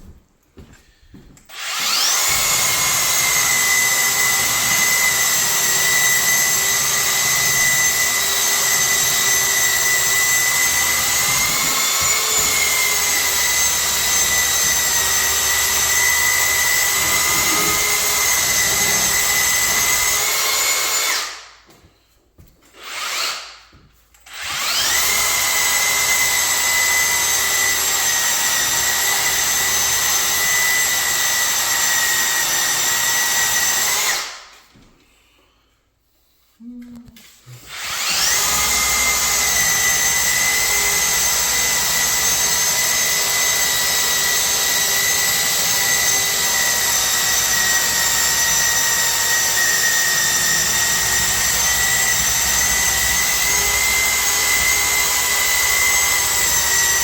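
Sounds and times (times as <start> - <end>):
belt sander on wood: 1.6 - 21.2, 37.6 - 57.0.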